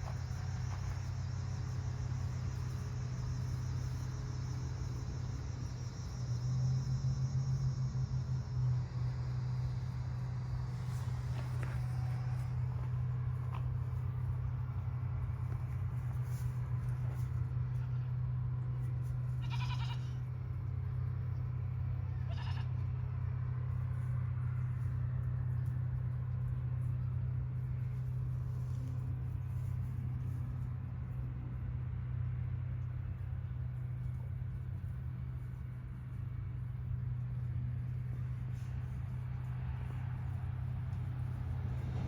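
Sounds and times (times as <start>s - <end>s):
steady low hum: 0.0s - 42.0s
goat bleating: 19.3s - 20.3s, 22.1s - 22.8s.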